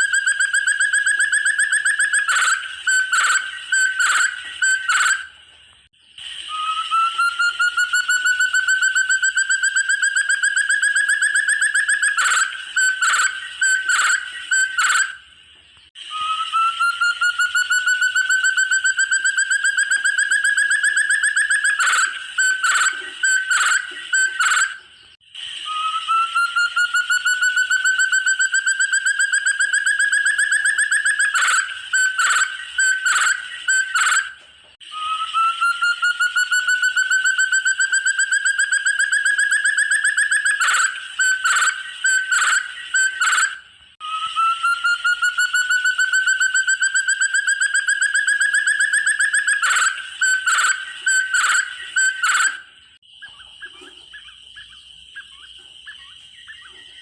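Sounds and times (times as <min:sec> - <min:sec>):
partridge whistled trill call: 0:00.0 - 0:57.0.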